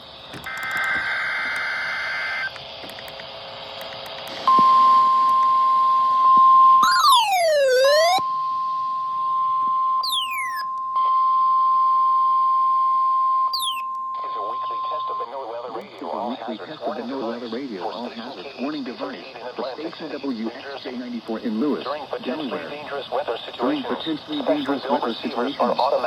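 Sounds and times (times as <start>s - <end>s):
buzzy data tones: 6.8s - 8.2s, 10.0s - 10.7s, 13.6s - 15.0s
sweeping alert tones: 6.8s - 8.2s, 10.0s - 10.7s, 13.6s - 13.9s
warning alarm tone: 6.8s - 8.2s, 10.0s - 10.8s, 13.5s - 15.2s.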